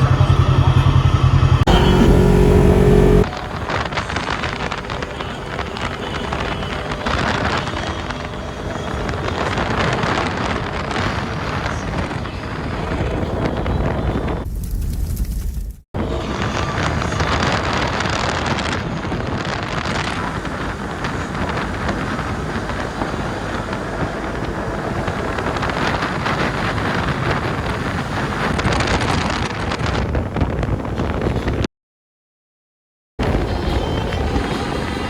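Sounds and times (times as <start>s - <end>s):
all-terrain vehicle engine running: 0.0s - 14.9s, 19.8s - 28.5s
wind buffeting microphone: 0.0s - 31.7s, 33.2s - 35.0s.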